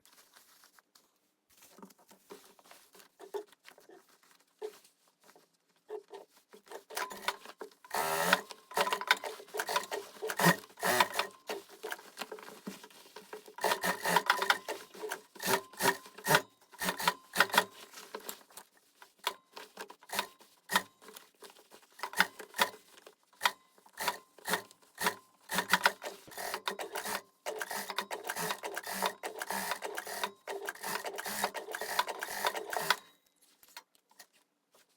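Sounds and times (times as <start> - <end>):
fabric handling and rubbing: 0.0 - 15.5, 17.5 - 22.0
sewing machine stitching: 6.7 - 12.6, 13.3 - 17.8, 24.0 - 33.0.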